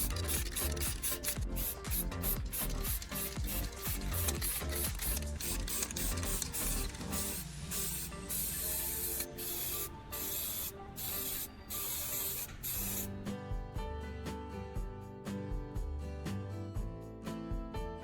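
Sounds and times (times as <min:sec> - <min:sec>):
aerosol spray can spraying: 0:00.0 - 0:13.1
background music: 0:00.0 - 0:18.0.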